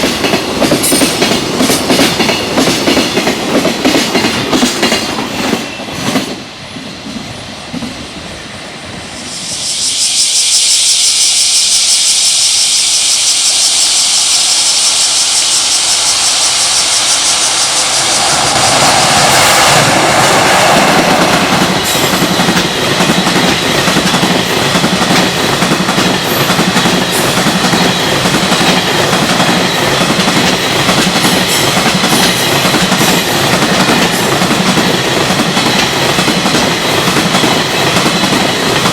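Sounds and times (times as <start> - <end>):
high hiss from rails: 8.5 - 38.9
locomotive rumble: 17.2 - 23.2.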